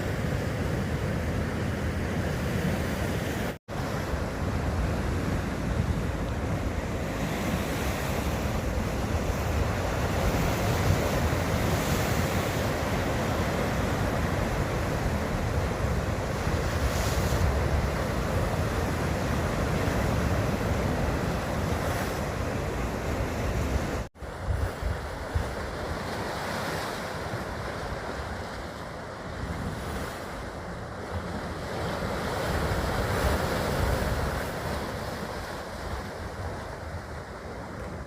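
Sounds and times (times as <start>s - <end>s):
wind buffeting microphone: 0.0s - 26.4s
sea waves washing in: 0.0s - 38.0s.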